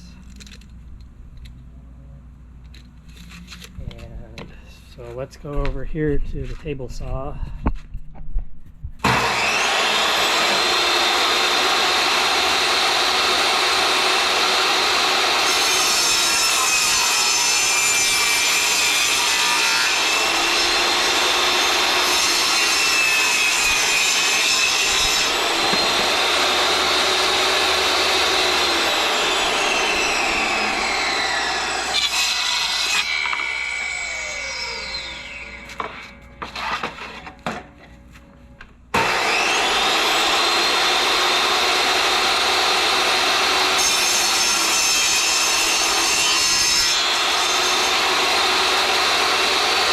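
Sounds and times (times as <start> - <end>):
saw blade spinning down: 9.0 - 15.4
table saw cutting plywood: 9.0 - 37.6, 38.9 - 49.9.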